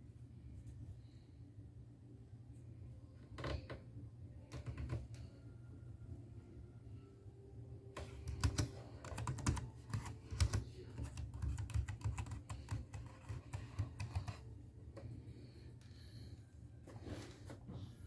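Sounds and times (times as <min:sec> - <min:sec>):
typing on a keyboard: 0:04.5 - 0:05.0, 0:08.0 - 0:14.4.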